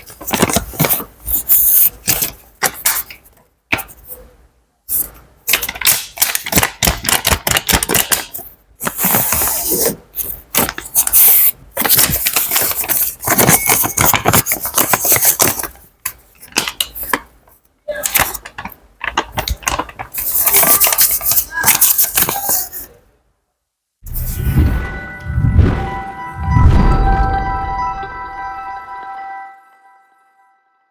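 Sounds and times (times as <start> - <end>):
money rustling and clinking: 5.5 - 17.5, 18.1 - 22.9
brief ringing tones: 24.5 - 30.9.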